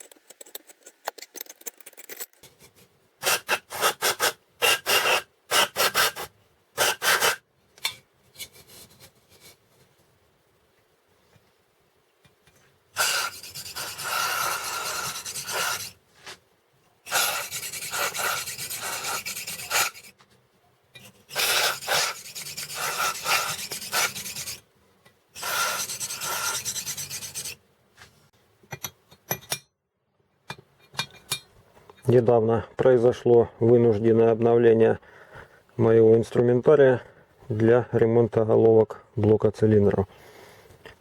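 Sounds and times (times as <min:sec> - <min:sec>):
reamer rasping metal on metal: 0:03.2 - 0:07.4, 0:13.0 - 0:16.0, 0:17.1 - 0:20.2, 0:21.0 - 0:24.6, 0:25.4 - 0:27.6.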